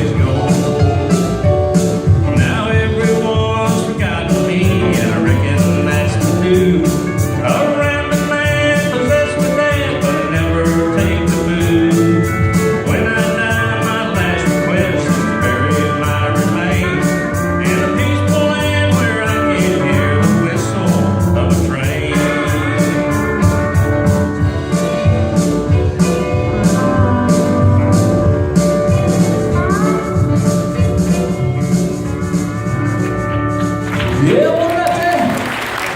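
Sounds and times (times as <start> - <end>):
man singing over a band: 0.0 - 1.6, 2.2 - 27.4
country music band: 0.0 - 35.9.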